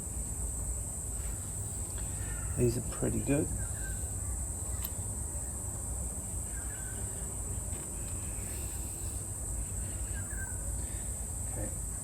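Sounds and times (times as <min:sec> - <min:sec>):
insects trilling: 0:00.0 - 0:12.0
bird chirps: 0:03.4 - 0:05.7, 0:06.4 - 0:07.2, 0:09.8 - 0:11.0.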